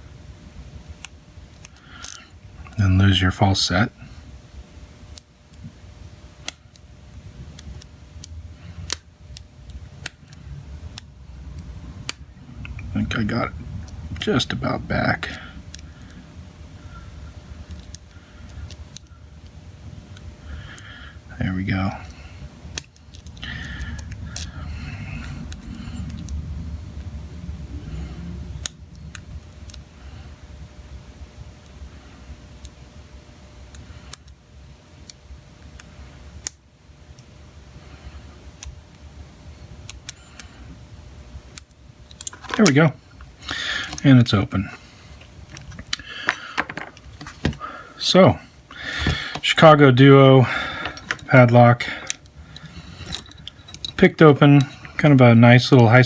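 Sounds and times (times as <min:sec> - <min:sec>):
lock pick scraping and handling: 0:42.1 - 0:44.4, 0:45.1 - 0:47.8, 0:48.9 - 0:49.6, 0:50.5 - 0:55.9
lock pick metallic clicks: 0:50.7 - 0:55.0.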